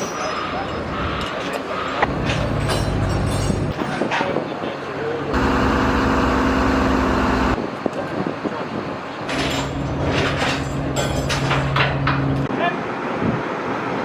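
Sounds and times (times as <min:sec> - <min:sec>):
machine motor running: 0:05.3 - 0:07.6
steady hum with clicking: 0:05.4 - 0:07.6.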